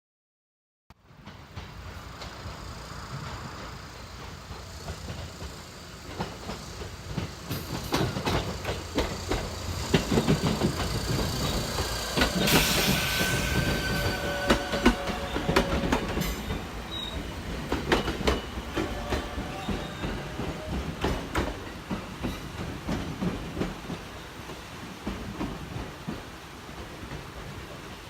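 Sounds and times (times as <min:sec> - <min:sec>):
train wheels clicking over rail joints: 0:01.0 - 0:28.0
hiss: 0:01.5 - 0:28.0.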